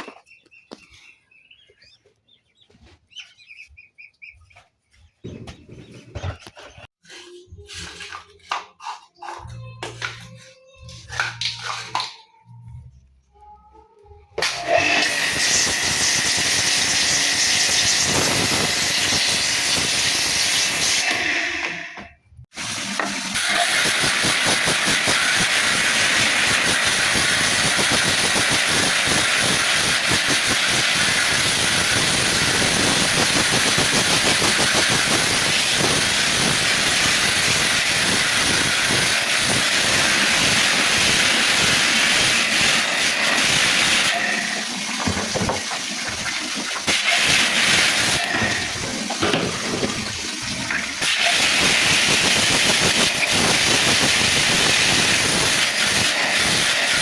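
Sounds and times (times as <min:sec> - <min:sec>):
loud hissing water spray: 0:23.4 - 0:44.7, 0:46.8 - 0:49.0, 0:50.1 - 0:57.0.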